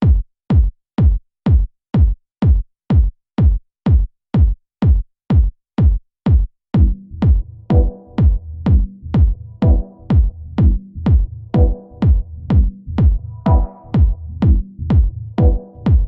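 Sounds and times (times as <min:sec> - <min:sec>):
drum machine kick drum: 0:00.0 - 0:16.0
low bass and synth: 0:06.8 - 0:16.0.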